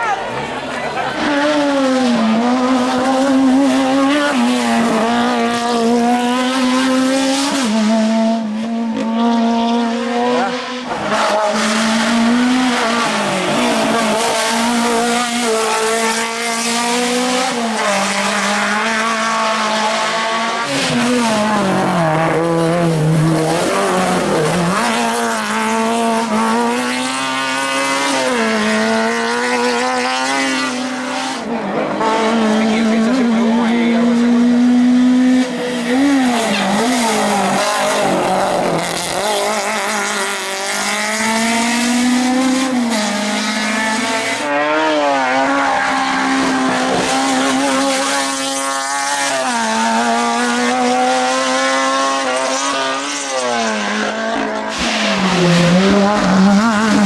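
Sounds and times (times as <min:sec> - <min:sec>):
car engine at high revs: 0:00.0 - 0:57.0.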